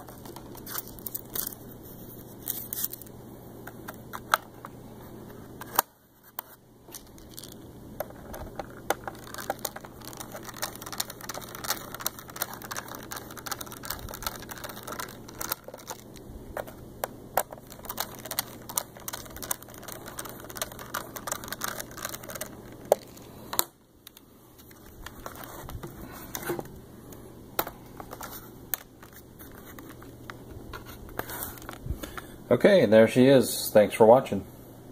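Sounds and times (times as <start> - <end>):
laptop keys clicking: 8.6 - 16.1, 17.4 - 23.0.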